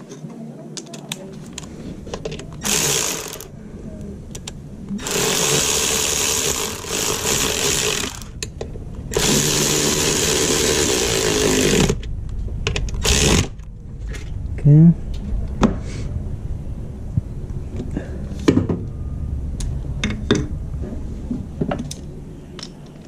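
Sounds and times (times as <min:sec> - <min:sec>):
small motor-driven tool running: 0:02.6 - 0:03.5, 0:05.0 - 0:08.3, 0:09.2 - 0:12.0, 0:13.0 - 0:13.5.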